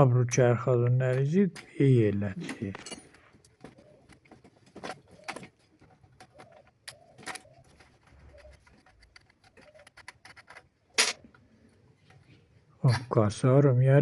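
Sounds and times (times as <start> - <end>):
metal tools clicking and tapping: 1.0 - 1.8, 2.4 - 3.6
pigeon cooing faintly: 3.6 - 10.5.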